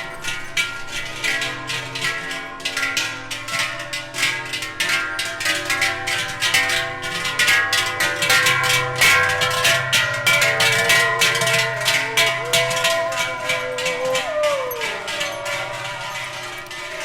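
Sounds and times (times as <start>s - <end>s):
cowbells clanging: 0.0s - 17.0s
held wavering tone: 10.3s - 17.0s.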